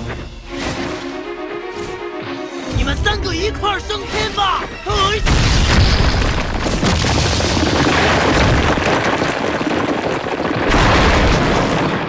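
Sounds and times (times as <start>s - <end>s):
cartoon explosion roar: 5.2s - 12.0s.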